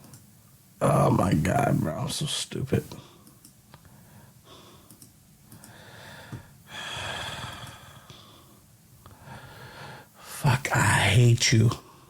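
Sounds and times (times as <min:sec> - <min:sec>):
faint breaths: 0:02.9 - 0:10.4.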